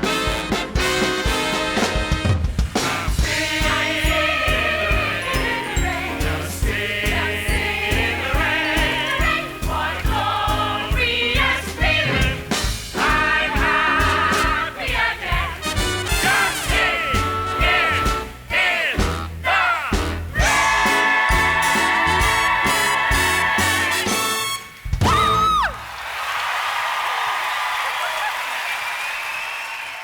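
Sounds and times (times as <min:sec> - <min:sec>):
swing band playing: 0:00.0 - 0:25.7
voices singing with vibrato: 0:02.9 - 0:25.8.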